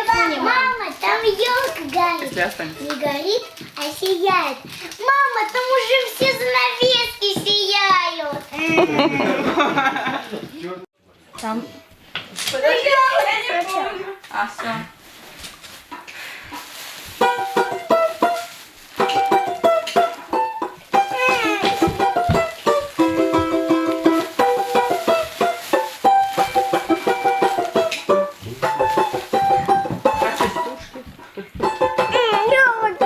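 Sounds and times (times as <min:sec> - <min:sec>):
plucked string instrument music: 0:17.2 - 0:33.0.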